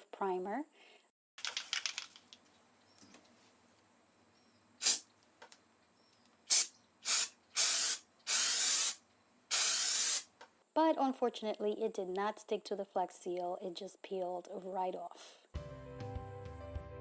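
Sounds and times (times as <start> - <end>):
spray can clicking rattle: 4.8 - 5.0, 6.5 - 10.3
spray can hissing: 4.8 - 5.1, 6.5 - 10.3.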